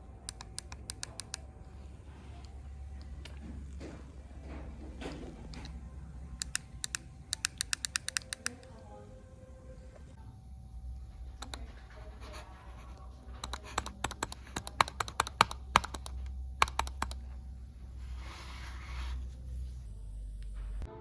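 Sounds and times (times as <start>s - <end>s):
low steady hum: 0.0s - 21.0s
sharp clicks and taps: 0.2s - 1.5s, 2.4s - 8.8s, 13.4s - 17.2s.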